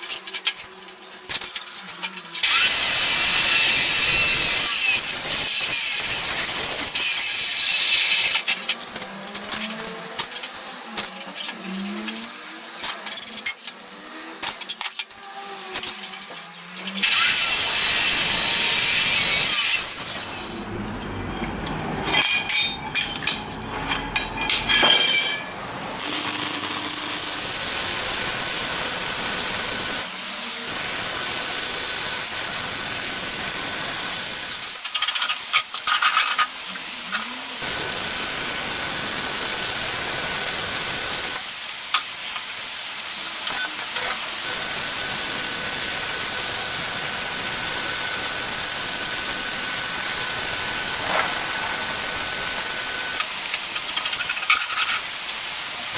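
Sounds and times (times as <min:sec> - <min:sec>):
power tool working material: 0:02.3 - 0:20.8, 0:25.9 - 0:34.9, 0:36.2 - 0:41.5, 0:43.4 - 0:55.1
steady high whine: 0:50.9 - 0:53.2.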